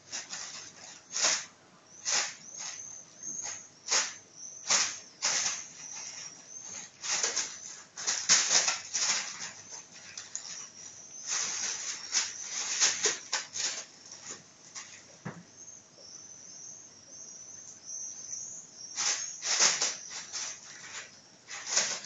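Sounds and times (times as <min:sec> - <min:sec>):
plastic bag crinkling: 0:00.0 - 0:02.8, 0:03.4 - 0:15.1, 0:19.0 - 0:22.0
crickets chirping: 0:00.0 - 0:22.0.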